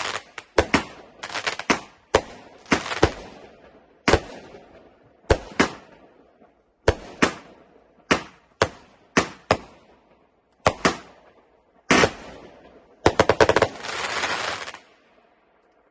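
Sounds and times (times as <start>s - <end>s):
rapid firework cracks: 0.0s - 3.5s, 4.1s - 4.6s, 5.3s - 6.0s, 6.8s - 9.8s, 10.6s - 11.2s, 11.9s - 14.9s
firework bangs: 0.0s - 4.6s, 10.7s - 14.8s.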